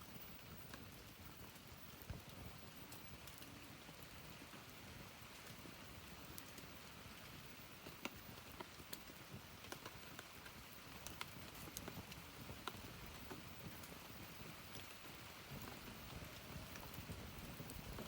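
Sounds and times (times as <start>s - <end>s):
wood fire crackling: 0.0s - 18.0s.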